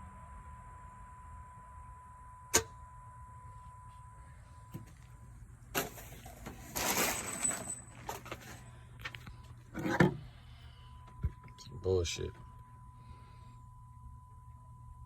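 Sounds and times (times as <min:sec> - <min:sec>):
rustling: 0:05.8 - 0:08.8.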